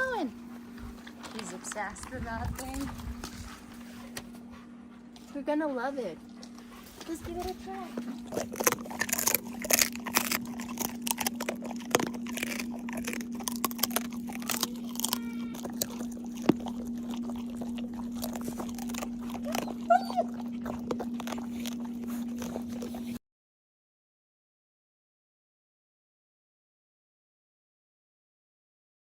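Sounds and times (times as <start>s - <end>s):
dog chewing crunchy treat: 0.0s - 5.4s, 6.0s - 23.2s
steady low hum: 0.0s - 23.2s
dog whining: 6.3s - 23.2s.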